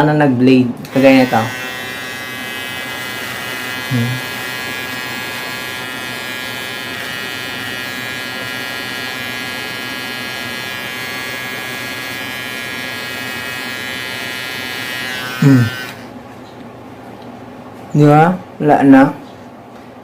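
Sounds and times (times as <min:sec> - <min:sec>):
hair trimmer buzzing: 0:00.9 - 0:16.1.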